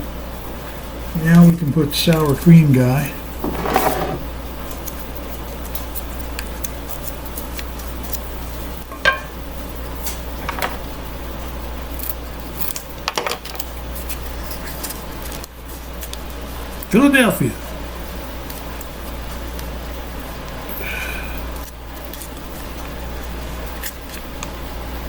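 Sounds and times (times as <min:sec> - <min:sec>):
utensil scraping a skillet: 0:03.4 - 0:04.3.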